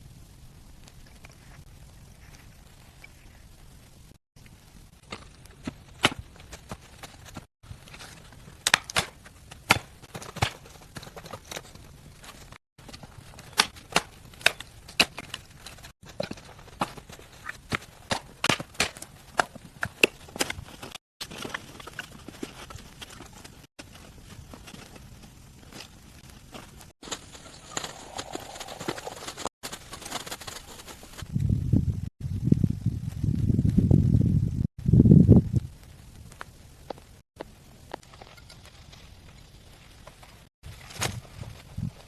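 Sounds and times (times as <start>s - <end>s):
sharp knocks and cracks: 7.4s - 11.7s, 12.8s - 17.0s, 17.7s - 21.8s.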